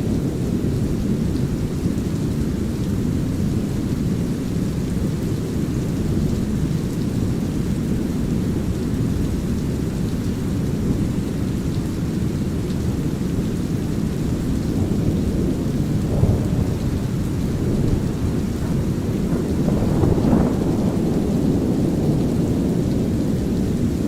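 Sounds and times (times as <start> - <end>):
light rain pattering: 0.0 - 24.0
low thunder rumble: 0.0 - 24.0
deep brown noise: 14.7 - 22.3.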